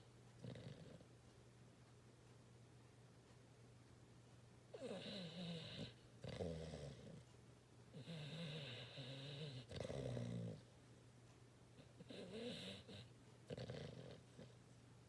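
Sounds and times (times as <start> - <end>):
wavering pitched snoring: 4.8 - 7.2, 7.9 - 10.6, 12.0 - 14.6.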